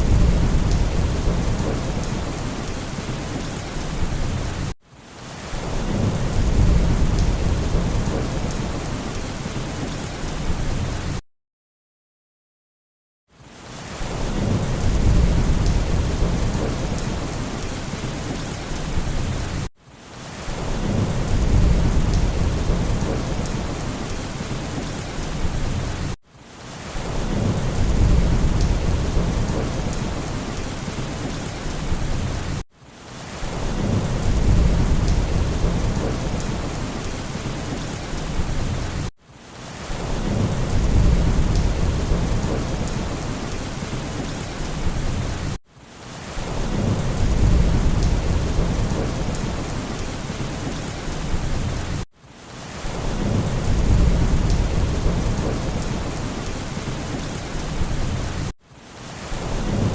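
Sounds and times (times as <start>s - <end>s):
low thunder rumble: 0.0s - 4.7s, 5.7s - 8.9s, 14.2s - 19.6s, 20.7s - 24.6s, 27.1s - 30.7s, 33.6s - 37.1s, 40.0s - 45.5s, 46.6s - 50.4s, 53.0s - 56.9s
heavy rain hiss: 0.0s - 11.2s, 13.6s - 59.9s.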